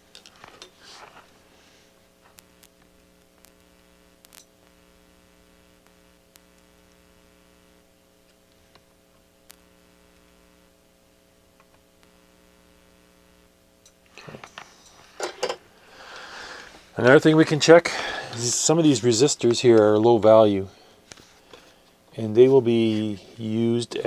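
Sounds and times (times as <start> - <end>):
faint electrical hum: 0.0 - 24.0
small clicks and ticks: 2.2 - 4.8, 8.2 - 10.3.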